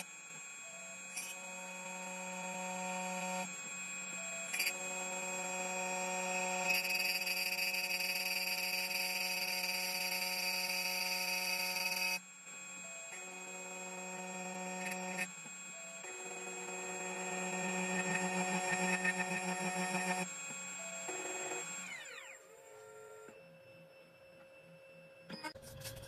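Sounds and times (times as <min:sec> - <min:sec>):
cutter milling key with hissing whine: 0:00.0 - 0:25.9
key cutting machine motor hum: 0:12.9 - 0:23.2.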